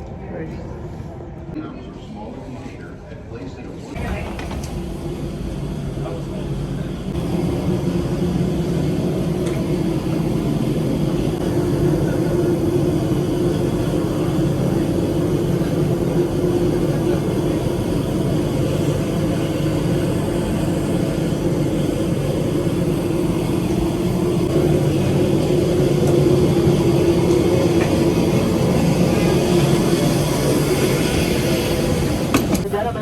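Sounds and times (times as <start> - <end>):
airliner cabin engine hum: 4.0 - 33.0
faint voices: 9.2 - 33.0.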